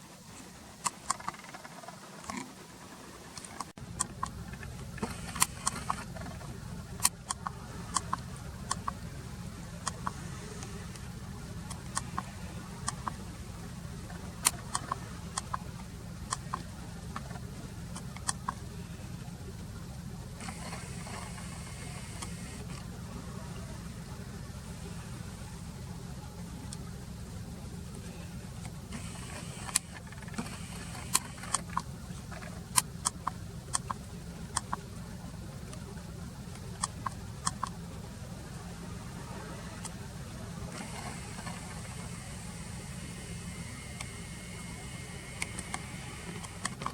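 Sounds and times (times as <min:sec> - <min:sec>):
low engine hum: 0:00.0 - 0:46.9
sharp ticks and clicks: 0:28.6 - 0:34.8, 0:36.5 - 0:37.8.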